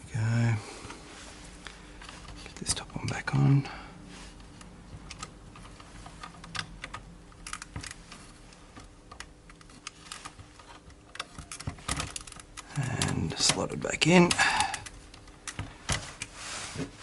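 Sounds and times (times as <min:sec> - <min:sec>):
small parts clicking and tapping: 0:04.6 - 0:16.3.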